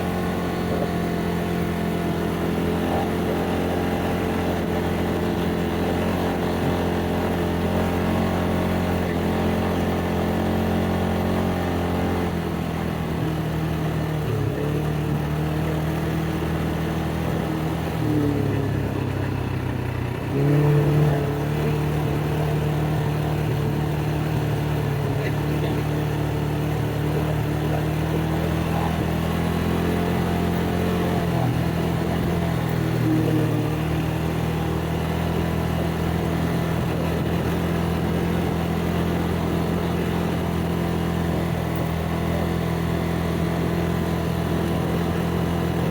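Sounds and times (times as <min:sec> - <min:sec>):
atv engine running: 0:00.0 - 0:45.9.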